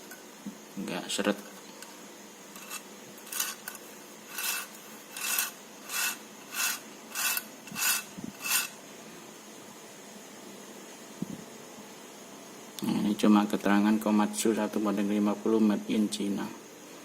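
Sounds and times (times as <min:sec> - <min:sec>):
toy metal tracks scraping: 0:02.6 - 0:08.8.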